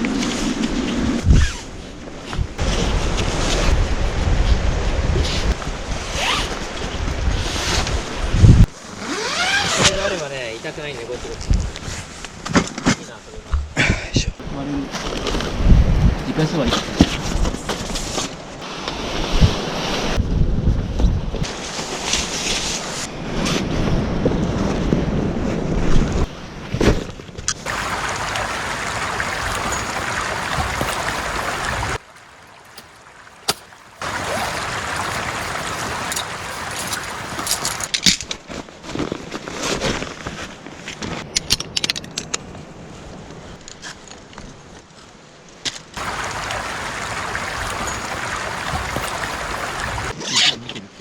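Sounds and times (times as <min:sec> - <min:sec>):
river water rushing: 0:27.6 - 0:38.0, 0:46.0 - 0:50.2.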